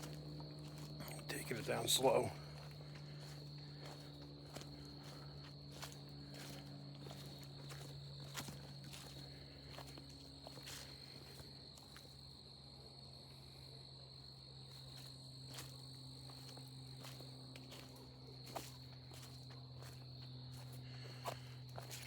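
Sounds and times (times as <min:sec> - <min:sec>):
high-pitched insect drone: 0:00.0 - 0:12.5
footsteps on wooded trail: 0:00.0 - 0:12.6, 0:14.2 - 0:22.0.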